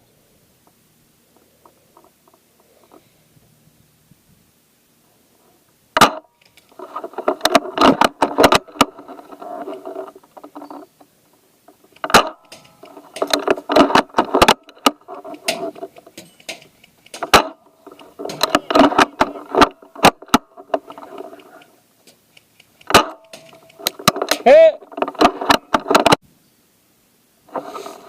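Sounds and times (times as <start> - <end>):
airsoft guns firing: 16.4 - 17.6, 22.8 - 24.5.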